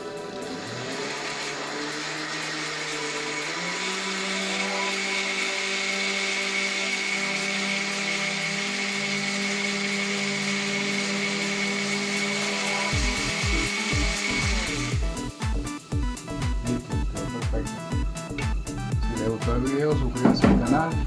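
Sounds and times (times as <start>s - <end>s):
blender motor humming and whining: 0.0s - 21.0s.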